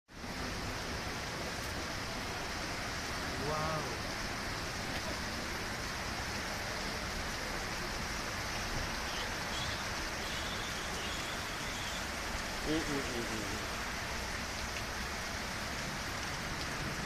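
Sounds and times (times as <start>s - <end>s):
heavy rain and rushing water: 0.1s - 17.0s.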